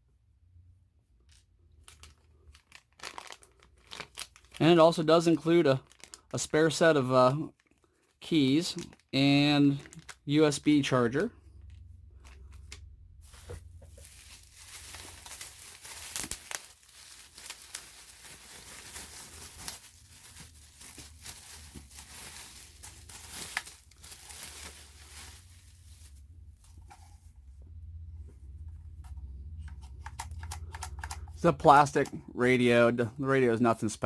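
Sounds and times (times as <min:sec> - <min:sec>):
plastic packaging tearing and crinkling: 0:01.8 - 0:07.8, 0:08.6 - 0:10.3, 0:12.2 - 0:26.2.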